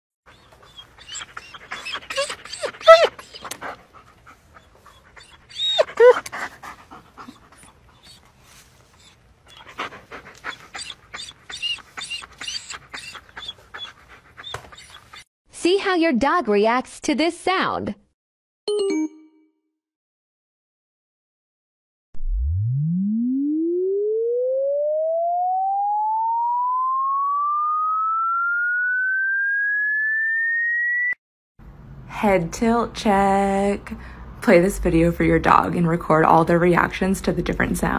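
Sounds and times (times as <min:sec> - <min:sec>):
dog whining: 0:00.3 - 0:03.8, 0:04.6 - 0:15.3
dog panting with whimpers: 0:00.3 - 0:15.3
electronic tone rising in pitch: 0:22.2 - 0:31.2.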